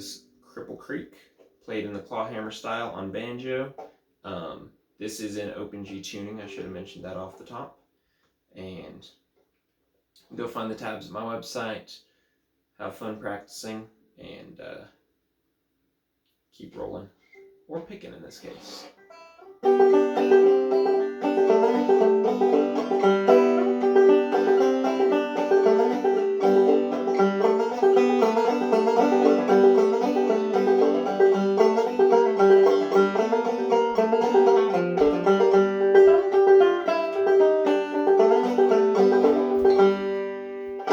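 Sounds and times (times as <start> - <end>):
banjo played clawhammer style: 5.1 - 7.6, 17.3 - 40.9.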